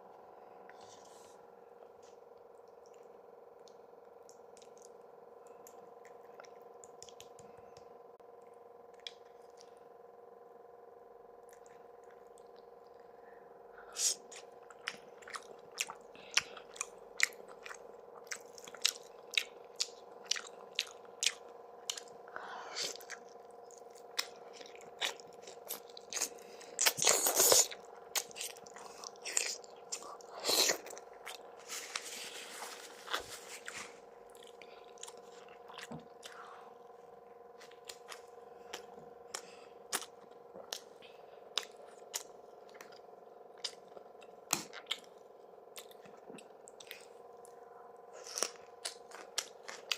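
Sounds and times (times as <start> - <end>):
wet chewing with mouth clicks: 2.0 - 7.9, 11.4 - 13.2, 13.8 - 49.9
crunching bites: 24.0 - 32.1.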